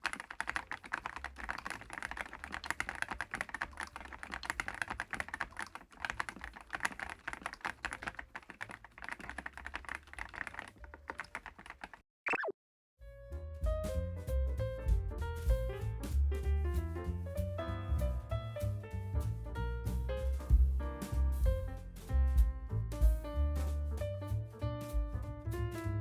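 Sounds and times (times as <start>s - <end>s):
mechanical keyboard typing: 0.0s - 12.0s.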